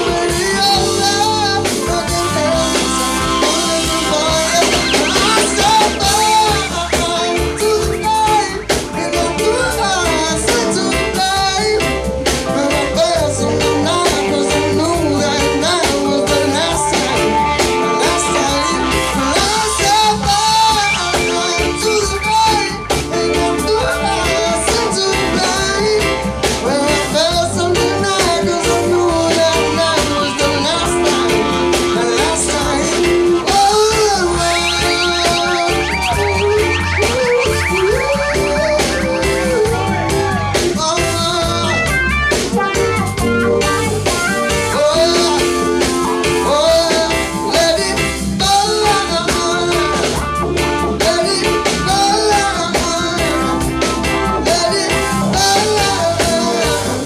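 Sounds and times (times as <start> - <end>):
bass line: 0.0 - 57.0
guitar: 0.0 - 57.0
man singing: 0.0 - 57.0.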